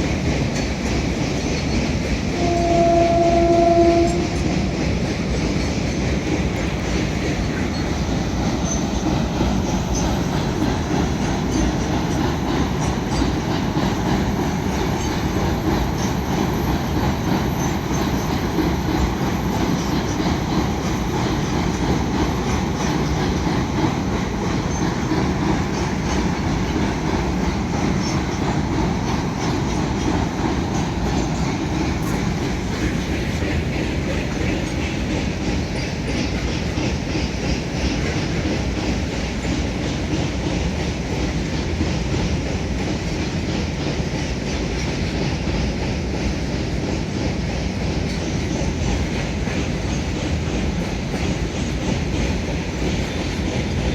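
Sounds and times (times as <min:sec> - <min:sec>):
train wheels clattering on rails: 0:00.0 - 0:53.9.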